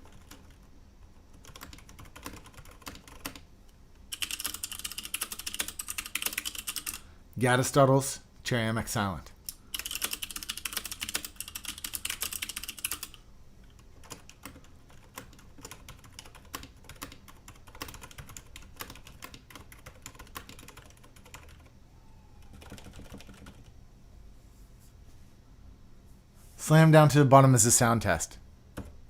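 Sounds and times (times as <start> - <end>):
loud mechanical keyboard typing: 0.0 - 3.5, 4.1 - 7.0, 9.5 - 21.7, 22.5 - 23.7
quiet keyboard typing: 0.0 - 7.1, 9.4 - 21.7, 22.4 - 23.8, 28.7 - 29.0.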